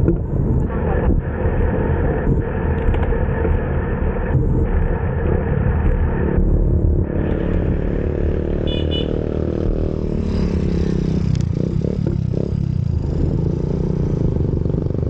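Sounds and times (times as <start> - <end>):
wind rumble on microphone: 0.0 - 8.6
bicycle road noise: 0.0 - 15.0.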